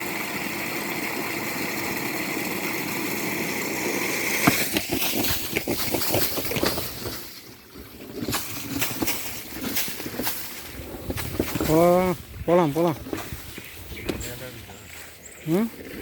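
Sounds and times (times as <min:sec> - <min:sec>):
knocks and rattles: 0:04.5 - 0:14.4.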